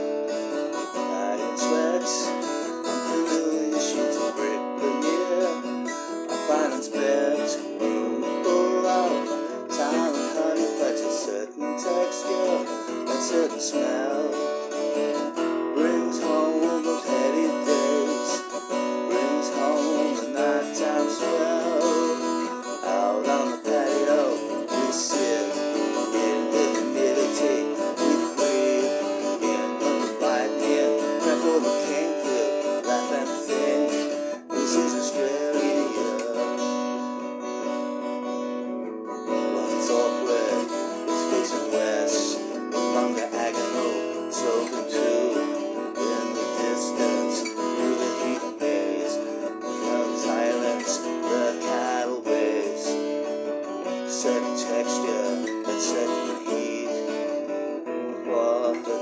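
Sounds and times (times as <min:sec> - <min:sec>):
acoustic guitar strumming: 0:00.0 - 0:59.0.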